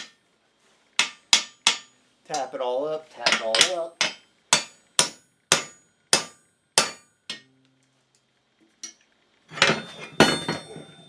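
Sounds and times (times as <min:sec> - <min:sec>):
metal clinking and clattering: 0:08.8 - 0:11.0.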